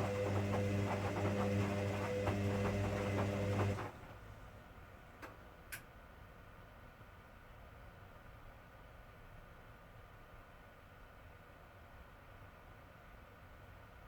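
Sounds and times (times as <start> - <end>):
washing machine humming: 0.0 - 4.5.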